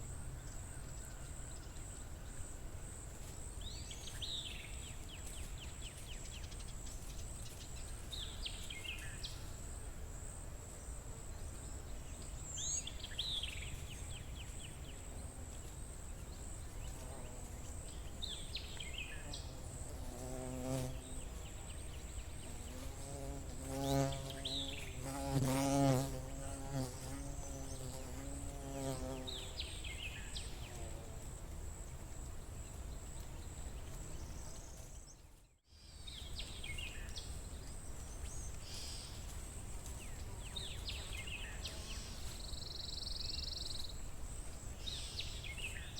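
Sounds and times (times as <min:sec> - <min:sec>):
flying insect buzzing: 0:19.1 - 0:21.7, 0:22.3 - 0:30.0.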